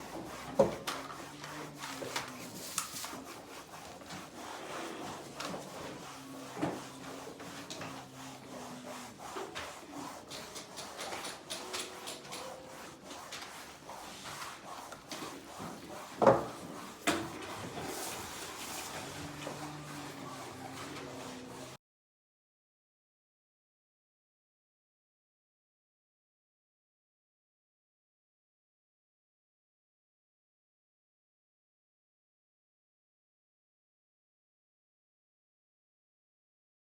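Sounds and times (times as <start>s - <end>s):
rubbing and scraping: 0.0s - 21.8s.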